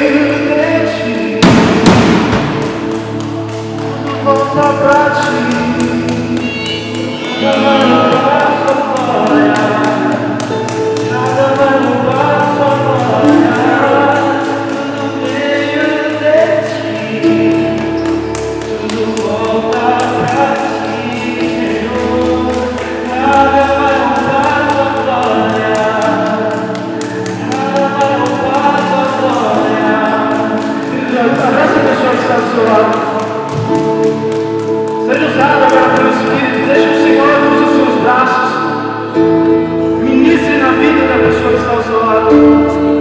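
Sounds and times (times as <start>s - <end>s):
light percussive beat: 0.0s - 38.6s
keyboard chords: 0.0s - 43.0s
voices singing gospel: 0.0s - 43.0s.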